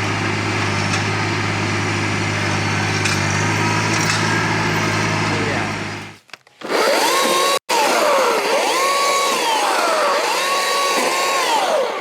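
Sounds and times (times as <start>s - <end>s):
electric chainsaw cutting wood: 6.6s - 12.0s.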